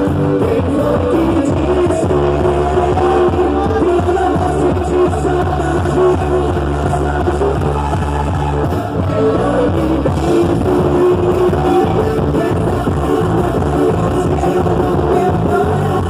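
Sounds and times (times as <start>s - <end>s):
dance music with singing: 0.0s - 16.0s
held bass line: 0.0s - 16.0s.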